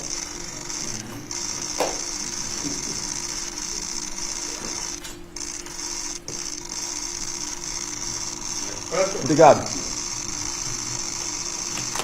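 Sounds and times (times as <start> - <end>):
camera shutters clicking: 0.5 - 3.2, 10.5 - 12.0.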